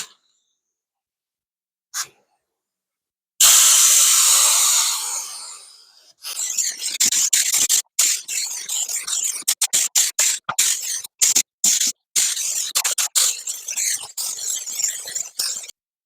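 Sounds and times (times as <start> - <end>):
paint spray gun hissing: 3.4 - 5.7, 9.5 - 12.9.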